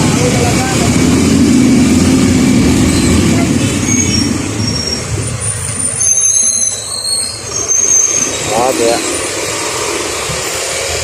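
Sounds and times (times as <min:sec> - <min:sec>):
vehicle engine rumbling: 0:00.0 - 0:11.0
thin high-pitched squeals: 0:03.8 - 0:09.2.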